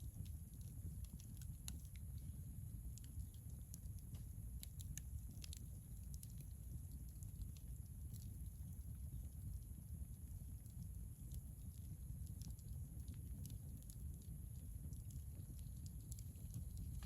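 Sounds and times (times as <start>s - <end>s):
campfire crackling and popping: 0.0s - 17.0s.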